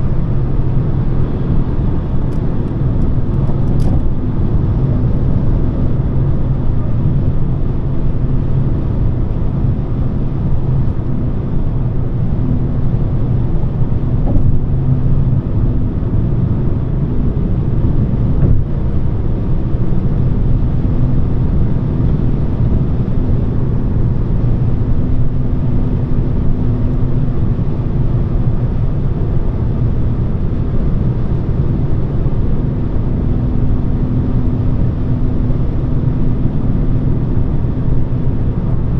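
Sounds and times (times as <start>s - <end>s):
tyre and road noise: 0.0s - 6.8s, 10.1s - 21.3s
car engine humming: 0.0s - 25.0s.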